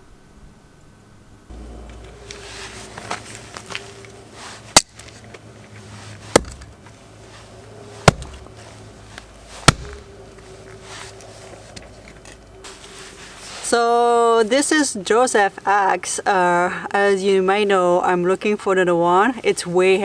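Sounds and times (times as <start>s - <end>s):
axe cracking into wood: 4.8s - 5.2s, 6.3s - 6.8s, 8.0s - 8.5s, 9.6s - 10.1s.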